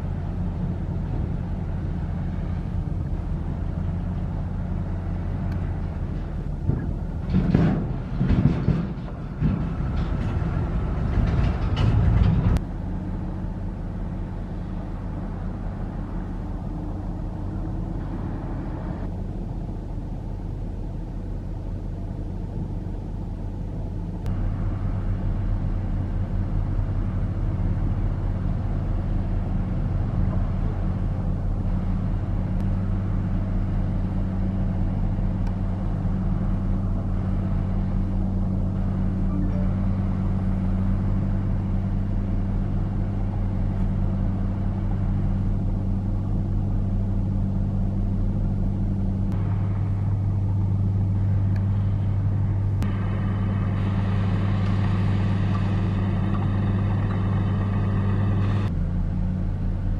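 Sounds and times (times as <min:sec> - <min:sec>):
heavy diesel machinery running: 0:00.0 - 0:59.9
machinery clanking: 0:05.5 - 0:12.6.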